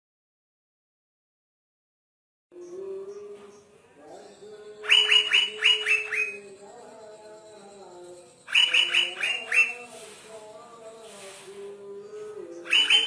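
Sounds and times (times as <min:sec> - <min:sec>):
bird calling sharp notes: 0:04.8 - 0:06.6, 0:08.5 - 0:10.0, 0:12.6 - 0:13.0.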